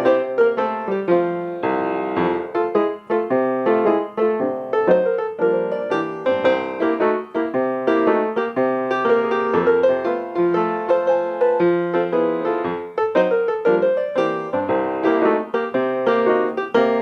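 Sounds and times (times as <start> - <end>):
bouncy solo piano: 0.0 - 17.0.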